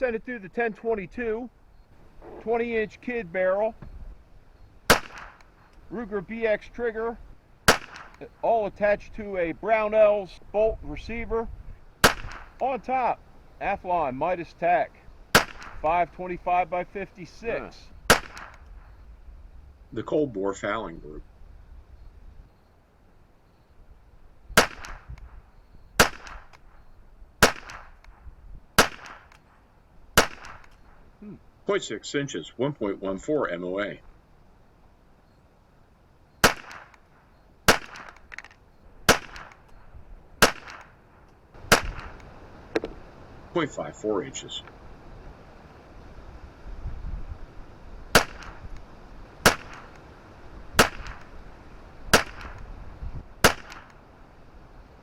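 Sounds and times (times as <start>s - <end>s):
wind hiss: 0.0s - 55.0s
rifle shots cracking: 2.0s - 2.8s, 4.9s - 5.6s, 7.6s - 8.4s, 12.0s - 12.6s, 15.3s - 16.0s, 18.1s - 18.7s, 24.6s - 25.4s, 26.0s - 26.8s, 27.4s - 28.2s, 28.8s - 29.5s, 30.2s - 31.0s, 36.4s - 39.8s, 40.4s - 43.1s, 48.1s - 51.4s, 52.0s - 52.7s, 53.4s - 54.1s.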